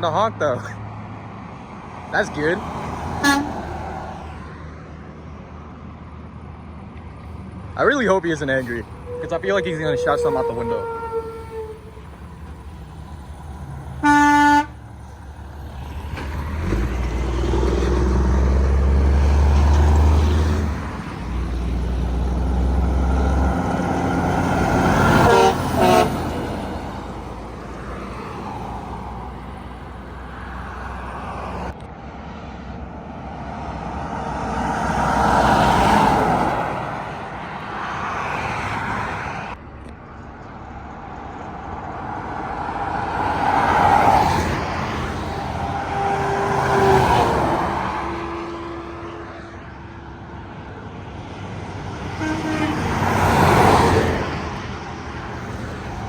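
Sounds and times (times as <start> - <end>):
truck engine rumble: 0.0 - 38.1, 39.0 - 56.0
road traffic passing: 0.0 - 56.0
vehicle horn: 3.2 - 3.7, 9.0 - 12.2, 14.0 - 14.8, 25.0 - 26.4, 45.7 - 49.8, 52.2 - 53.1.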